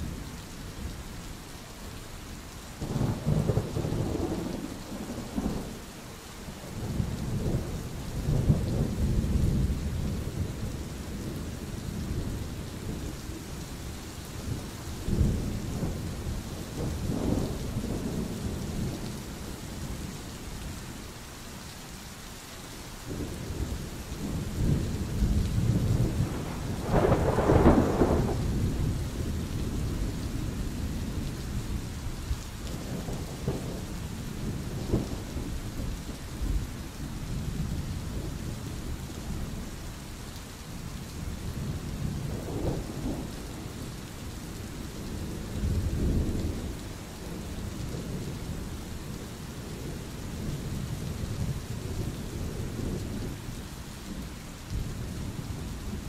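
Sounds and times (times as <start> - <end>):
steady rain: 0.0 - 56.0
thunder rumbling: 2.8 - 5.8, 14.5 - 19.1, 23.1 - 31.9, 32.8 - 39.6, 41.2 - 43.8.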